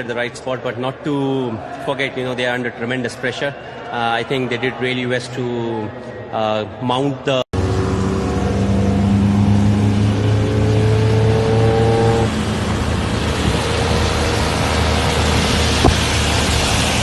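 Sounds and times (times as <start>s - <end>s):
car engine accelerating: 7.6s - 17.0s.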